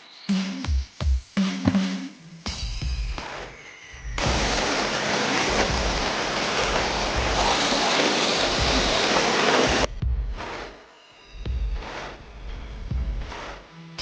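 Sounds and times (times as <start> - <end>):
spraying hiss: 4.2 - 9.9.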